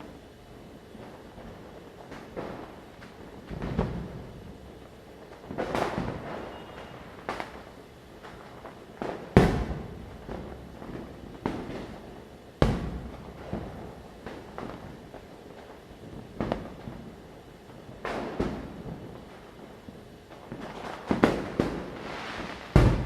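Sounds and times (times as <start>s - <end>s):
firecracker bangs with echo: 9.1s - 10.3s, 21.1s - 23.0s.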